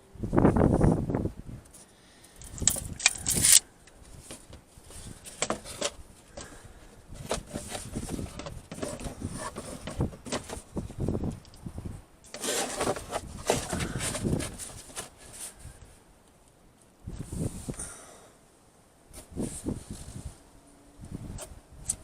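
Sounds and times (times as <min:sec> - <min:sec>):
wooden boards scraping: 0:07.2 - 0:10.8, 0:12.3 - 0:15.6.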